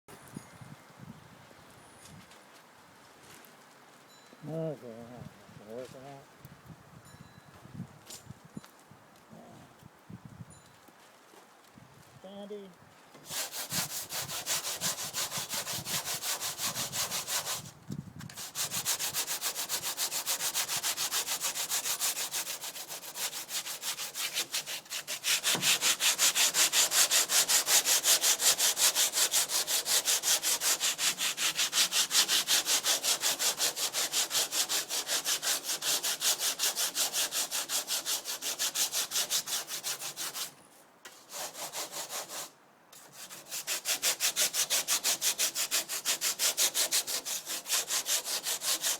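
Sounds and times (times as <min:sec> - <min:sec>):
sanding fiberglass: 0:13.2 - 0:17.7, 0:18.3 - 0:40.5, 0:41.1 - 0:48.9.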